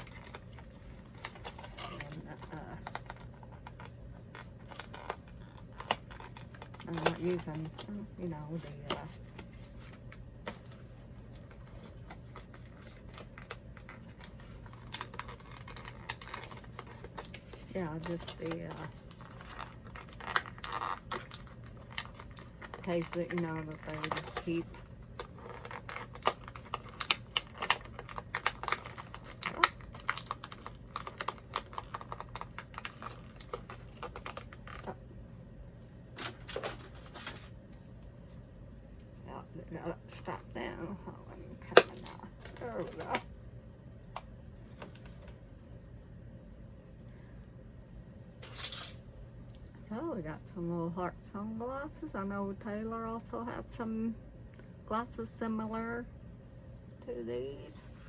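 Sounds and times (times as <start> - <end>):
plastic packaging clicking: 11.4 - 17.6, 18.2 - 34.9.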